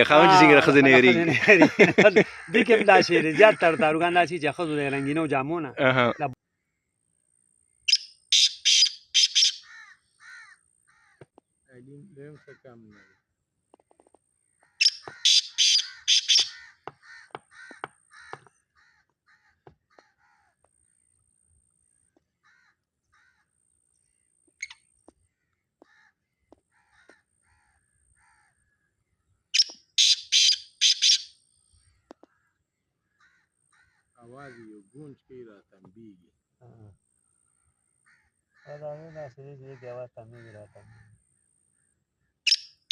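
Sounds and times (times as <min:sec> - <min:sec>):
francolin calling: 0:07.7 - 0:11.2, 0:14.7 - 0:18.4, 0:24.0 - 0:24.9, 0:29.6 - 0:32.3, 0:42.5 - 0:42.9.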